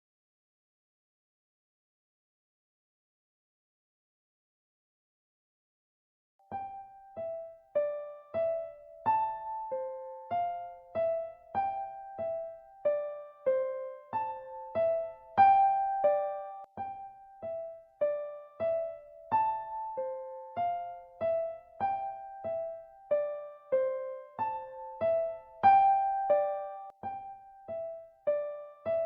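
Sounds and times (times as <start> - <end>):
keyboard playing gentle piano melody: 6.4 - 29.0.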